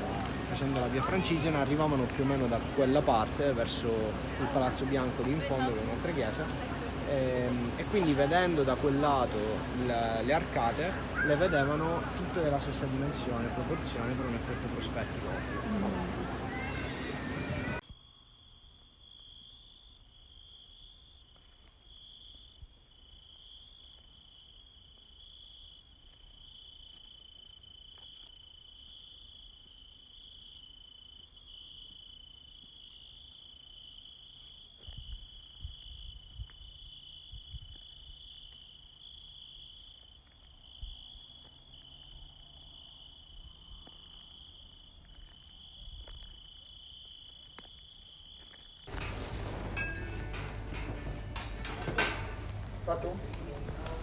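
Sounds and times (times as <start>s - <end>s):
insects chirring: 0.0s - 54.0s.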